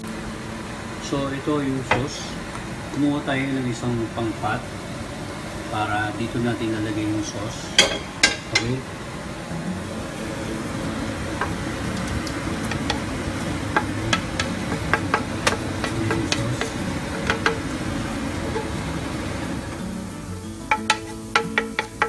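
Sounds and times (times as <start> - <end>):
steady low hum: 0.0 - 22.0
metal spoon scraping a pan: 7.7 - 8.8, 10.3 - 22.0.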